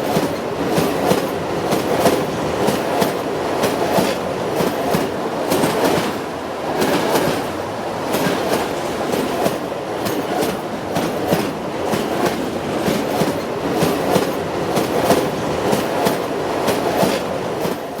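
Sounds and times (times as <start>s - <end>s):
train rumbling along track: 0.0s - 18.0s
wheels clickety-clack: 0.0s - 18.0s.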